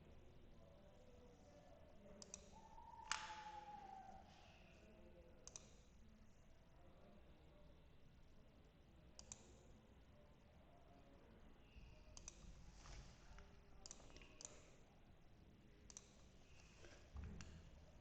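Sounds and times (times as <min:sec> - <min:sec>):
computer mouse clicks: 0:02.2 - 0:03.7, 0:05.4 - 0:05.9, 0:09.2 - 0:09.6, 0:12.2 - 0:12.5, 0:13.4 - 0:14.8, 0:15.9 - 0:17.6.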